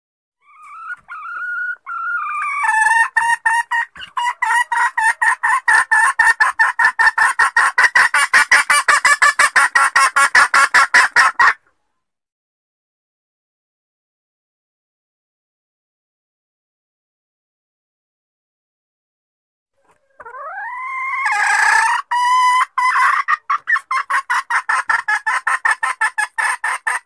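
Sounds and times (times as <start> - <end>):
hen clucking rapidly: 0.4 - 11.6, 19.8 - 27.0.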